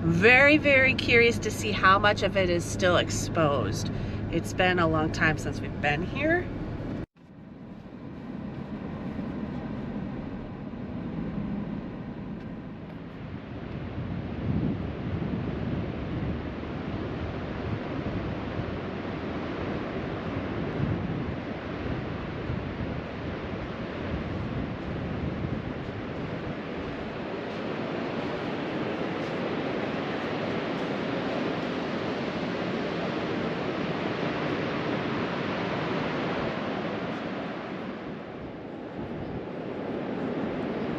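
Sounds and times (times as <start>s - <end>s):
wind gusting on microphone: 0.0s - 40.9s
ocean surf breaking: 13.4s - 40.9s.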